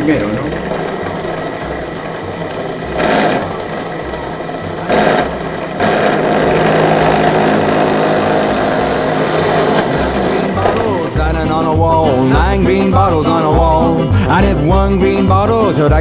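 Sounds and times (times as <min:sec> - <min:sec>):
small electric power tool boring: 0:00.0 - 0:11.2.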